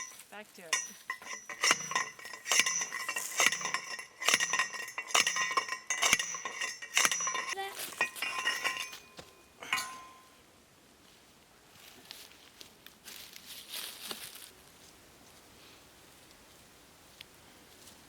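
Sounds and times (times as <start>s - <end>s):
metal blows on ringing pipe: 0.0s - 10.4s.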